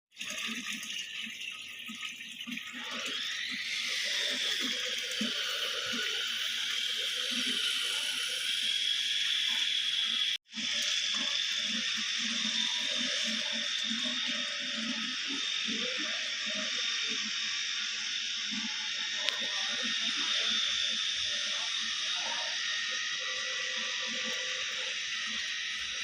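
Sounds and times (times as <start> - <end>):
garden waterfall splashing: 0.2 - 8.4, 10.5 - 14.8.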